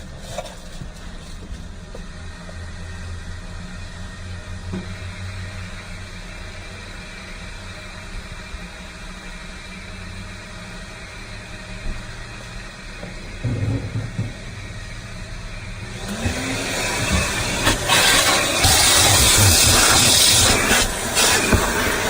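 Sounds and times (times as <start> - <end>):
vacuum motor drone and suction hiss: 1.9 - 22.0
loud bump: 13.3 - 15.0.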